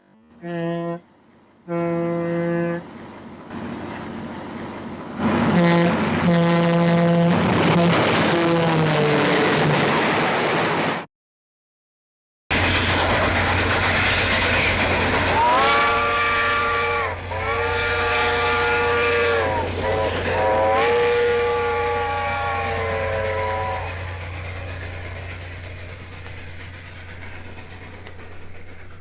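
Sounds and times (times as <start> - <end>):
train steam whistle: 0.4 - 1.1, 1.7 - 2.8, 5.5 - 9.6, 14.8 - 25.1
low-pitched sound: 21.4 - 29.0.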